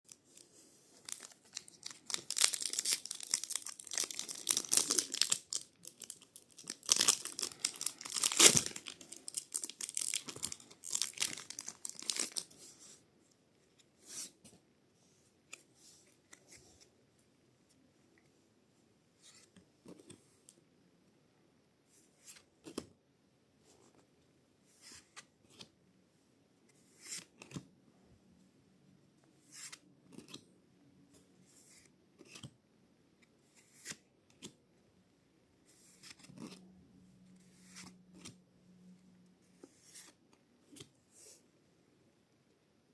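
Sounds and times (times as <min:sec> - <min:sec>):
foil wrapper crinkling: 0:01.0 - 0:12.5.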